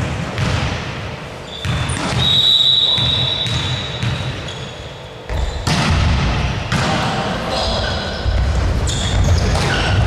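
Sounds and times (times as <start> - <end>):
ball bouncing on hard court: 0.0 - 4.7, 5.3 - 7.2, 8.3 - 10.0
high-pitched whistle-like tone: 2.2 - 3.9.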